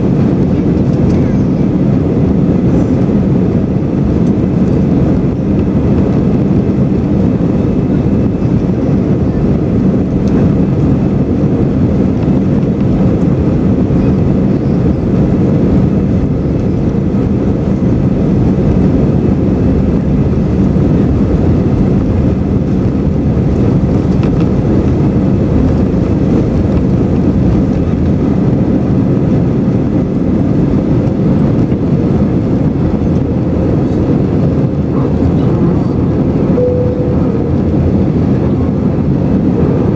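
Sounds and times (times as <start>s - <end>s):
airliner cabin engine rumble: 0.0s - 39.9s
faint hum: 35.0s - 39.0s.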